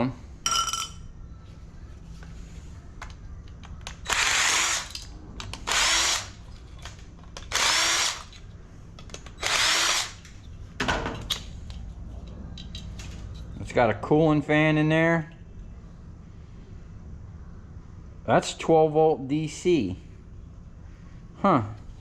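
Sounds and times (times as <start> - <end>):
power drill whining: 4.1 - 4.9, 5.7 - 6.3, 7.5 - 8.4, 9.4 - 10.2.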